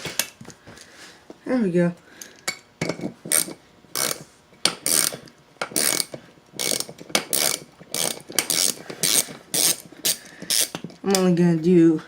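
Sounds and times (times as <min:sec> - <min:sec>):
ratchet wrench clicking: 0:03.3 - 0:11.2.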